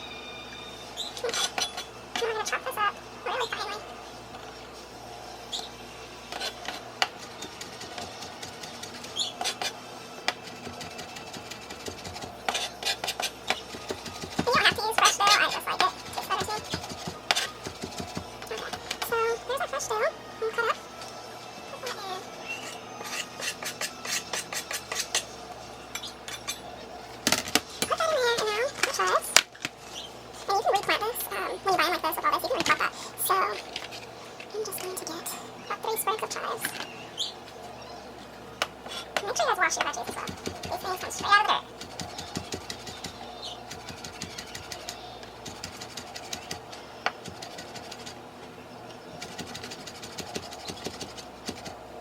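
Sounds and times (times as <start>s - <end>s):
knife chopping on cutting board: 10.3s - 14.8s, 16.0s - 19.1s, 40.2s - 48.1s.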